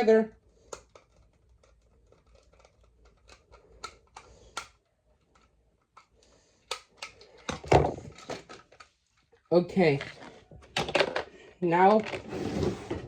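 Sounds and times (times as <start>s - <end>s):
plastic toy train pieces clicking: 0.6s - 7.6s.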